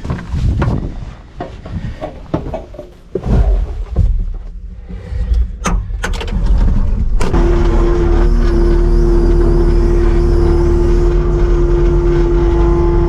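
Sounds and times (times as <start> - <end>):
clicks and clunks from controls: 5.1 - 8.6
diesel engine running: 6.2 - 13.0.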